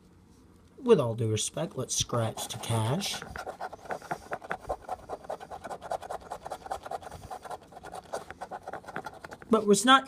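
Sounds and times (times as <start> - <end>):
scratching lottery ticket: 2.0 - 9.6.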